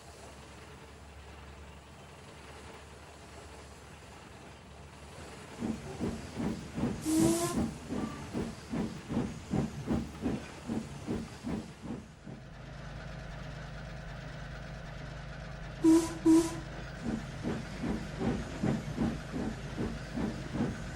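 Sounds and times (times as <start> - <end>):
steam locomotive chuffing: 0.0 - 20.9
train whistle toots: 7.0 - 8.4, 15.8 - 16.7.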